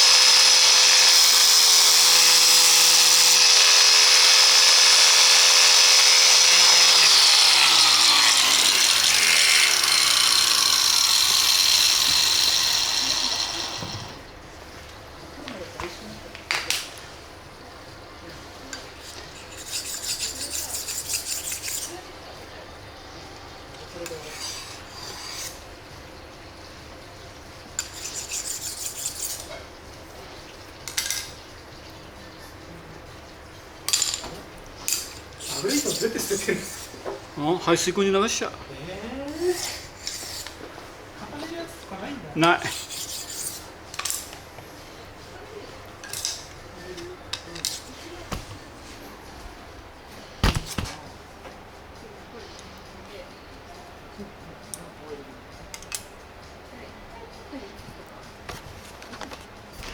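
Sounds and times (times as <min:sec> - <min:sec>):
electric grinder whine spinning down: 0:00.0 - 0:14.1
scraping and rubbing: 0:00.0 - 0:14.2, 0:19.0 - 0:22.0, 0:42.7 - 0:43.6.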